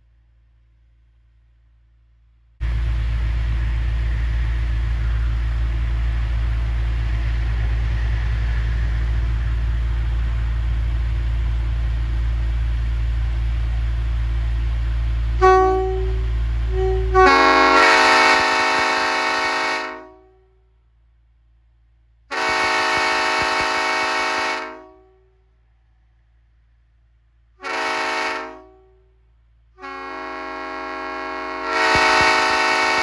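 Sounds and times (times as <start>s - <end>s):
low rumble: 0.0s - 17.8s
train air horn: 15.4s - 20.6s, 22.3s - 25.4s, 27.6s - 29.2s, 29.8s - 33.0s.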